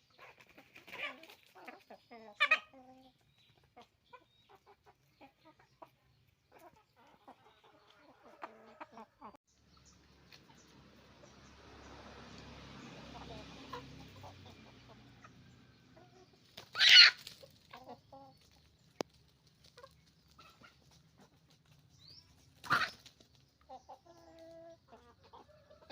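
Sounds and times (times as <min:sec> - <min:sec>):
chickens clucking: 0:00.0 - 0:25.9
chickens harsh outbursts: 0:00.2 - 0:01.8, 0:16.4 - 0:17.6, 0:22.6 - 0:23.1.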